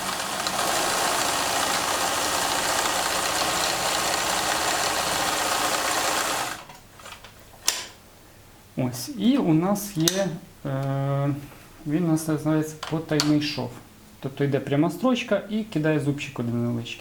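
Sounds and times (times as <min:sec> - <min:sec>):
sewing machine running: 0:00.0 - 0:06.7
sharp click: 0:10.0 - 0:10.3.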